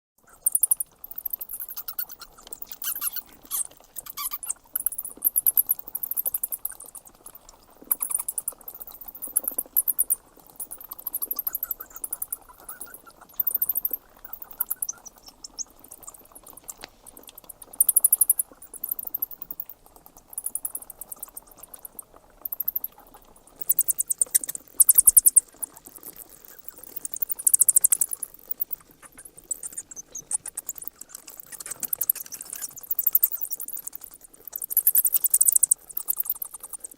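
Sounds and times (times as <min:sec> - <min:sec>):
bats squeaking: 0:00.2 - 0:36.9.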